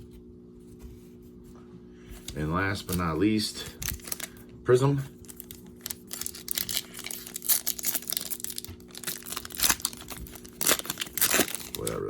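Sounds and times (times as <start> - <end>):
wrapper tearing and crinkling: 3.6 - 4.4, 5.1 - 12.0.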